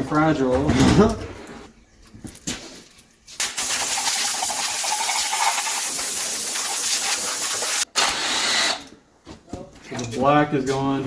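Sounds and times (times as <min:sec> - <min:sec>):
pressurised gas jet hissing: 0:03.4 - 0:07.9.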